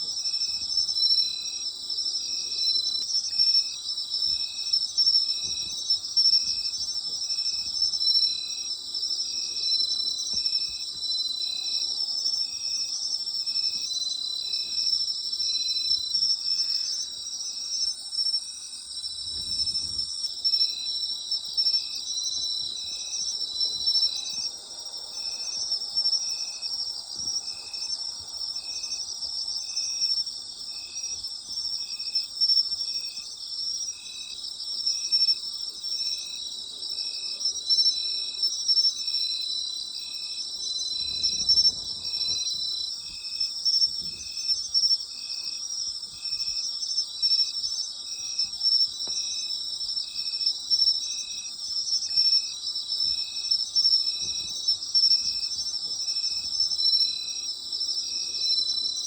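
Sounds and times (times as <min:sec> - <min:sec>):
insect chirping: 0:00.0 - 0:59.0
insects trilling in chorus: 0:00.0 - 0:59.0.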